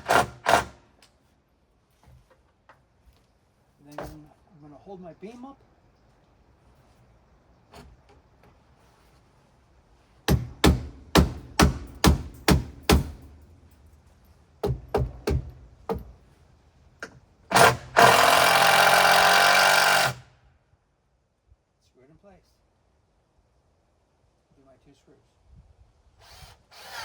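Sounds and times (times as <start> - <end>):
power drill driving a screw: 0.0 - 0.7, 17.5 - 20.2, 26.2 - 27.0
sharp knocks on wooden beam: 10.3 - 13.2, 14.6 - 16.2.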